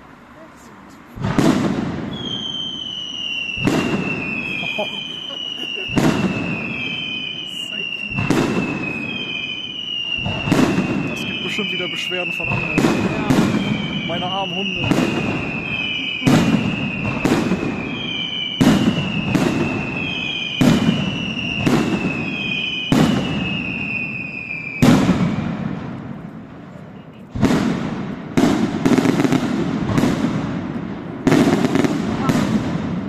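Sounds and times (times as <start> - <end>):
firework shells bursting: 1.1 - 26.4
falling firework whistle: 1.2 - 26.2.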